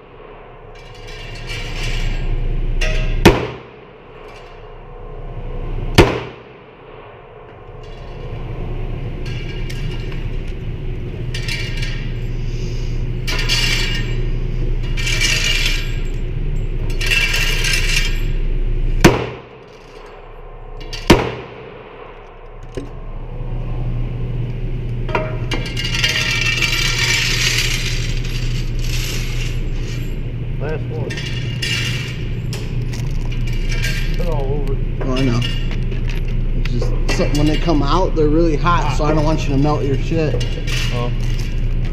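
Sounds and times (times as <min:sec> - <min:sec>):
steady low hum: 0:00.0 - 0:41.9
gunshots: 0:03.2 - 0:03.8, 0:06.0 - 0:07.2, 0:19.0 - 0:19.6, 0:21.1 - 0:22.1.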